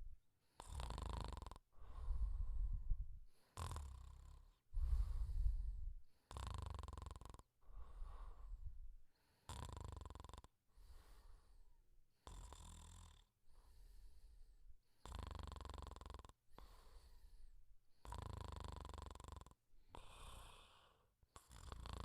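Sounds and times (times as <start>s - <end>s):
rattling snore: 0.6s - 1.6s, 6.3s - 7.4s, 9.5s - 10.5s, 15.1s - 16.3s, 18.0s - 19.6s, 21.4s - 22.0s
soft breath: 1.7s - 3.6s, 4.6s - 6.3s, 7.6s - 9.5s, 10.7s - 11.8s, 13.5s - 14.8s, 16.5s - 17.7s, 19.9s - 21.1s.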